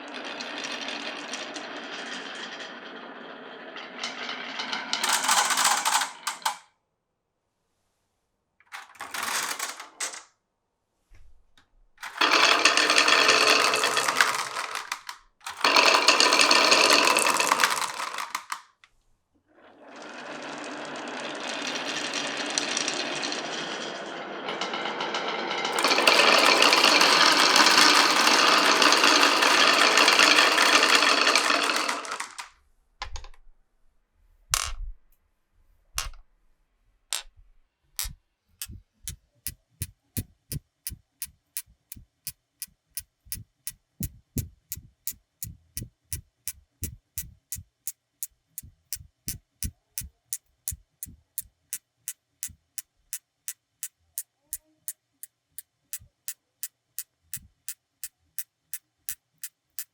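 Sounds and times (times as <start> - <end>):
marbles clacking together: 0.0 - 6.6, 8.8 - 10.2, 12.0 - 18.7, 19.8 - 32.5, 37.1 - 37.3, 38.0 - 38.8
marbles rolling down tracks: 0.0 - 6.6, 8.8 - 10.3, 12.0 - 18.7, 19.5 - 32.5, 38.0 - 38.8, 44.0 - 47.6, 57.3 - 57.7, 59.1 - 59.9.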